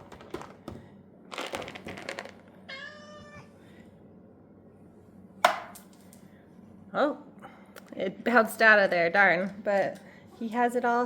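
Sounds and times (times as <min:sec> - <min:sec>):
cat meowing: 0:02.7 - 0:03.5.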